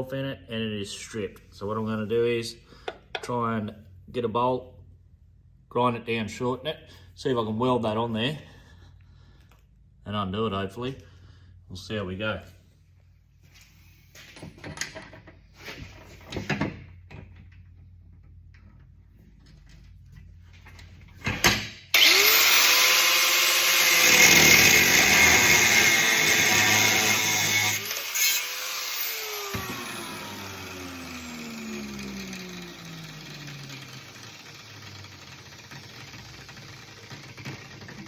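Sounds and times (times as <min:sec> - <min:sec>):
electric grinder grinding steel: 0:21.9 - 0:38.0
motor winding down whine: 0:21.9 - 0:38.0.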